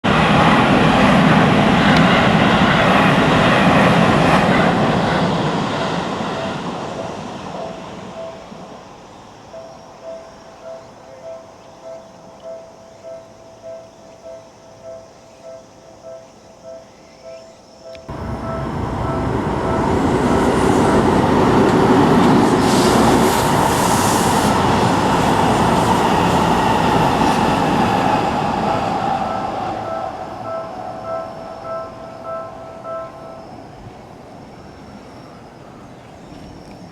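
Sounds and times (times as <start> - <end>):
train rumble and wheel noise: 0.0 - 36.9
crossing bell ringing: 9.5 - 22.3, 27.2 - 33.9.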